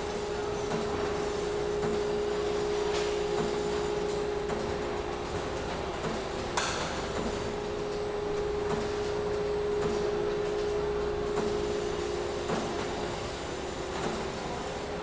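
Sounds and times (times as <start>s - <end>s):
factory machinery humming: 0.0s - 15.0s.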